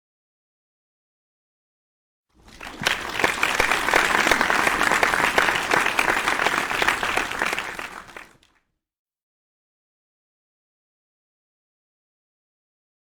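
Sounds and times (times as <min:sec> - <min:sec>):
audience applause: 0:02.4 - 0:08.5.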